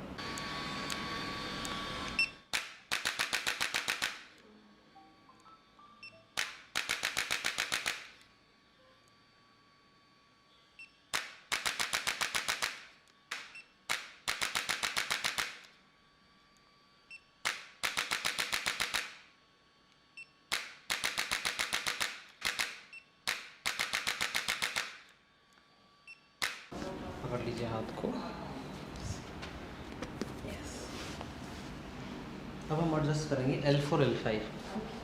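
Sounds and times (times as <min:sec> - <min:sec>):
rapid mechanical clicking: 0:20.5 - 0:25.0.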